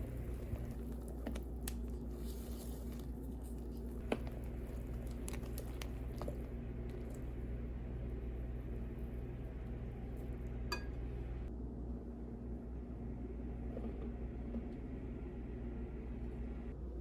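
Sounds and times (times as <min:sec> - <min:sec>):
squishing and crinkling: 0:00.0 - 0:09.1
steady low hum: 0:00.0 - 0:17.0.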